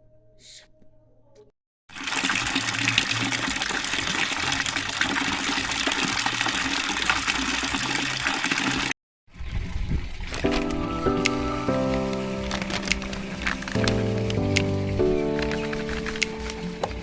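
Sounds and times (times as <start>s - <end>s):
water gushing: 1.9s - 14.5s.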